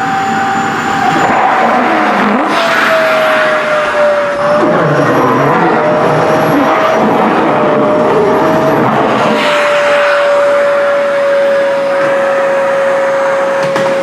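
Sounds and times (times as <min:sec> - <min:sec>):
vacuum cleaner motor whine: 0:00.0 - 0:14.0
low rumble: 0:01.2 - 0:12.0.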